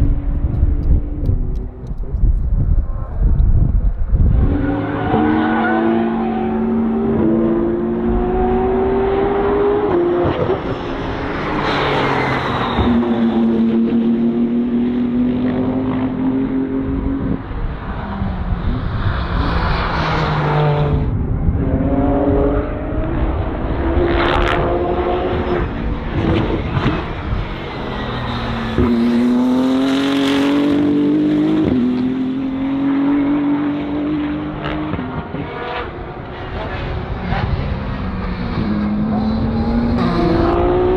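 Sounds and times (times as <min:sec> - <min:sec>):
race car engine revving: 0:19.4 - 0:40.9.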